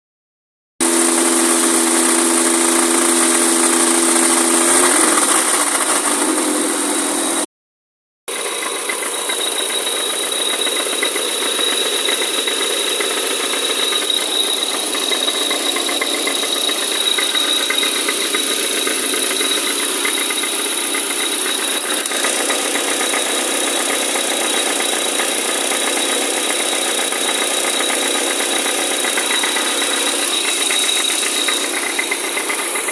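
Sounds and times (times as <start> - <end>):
engine idling: 0.8 - 7.5, 8.3 - 32.9
flywheel knocking rattle: 8.3 - 32.9.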